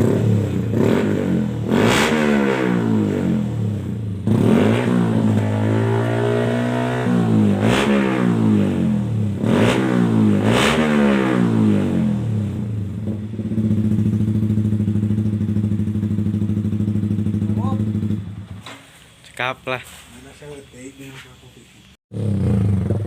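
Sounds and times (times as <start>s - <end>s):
motorcycle engine revving: 0.0s - 18.8s, 22.1s - 23.0s
motorcycle engine idling: 12.5s - 18.7s.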